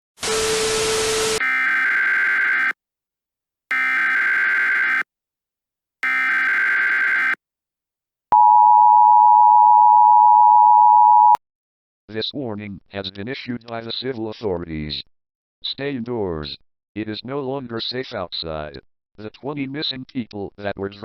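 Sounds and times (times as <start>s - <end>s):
loud two-tone alert signal: 0.3s - 2.8s, 3.7s - 5.0s, 6.0s - 7.4s
buzzy digital header tones: 1.4s - 2.8s, 3.7s - 5.0s, 6.0s - 7.4s.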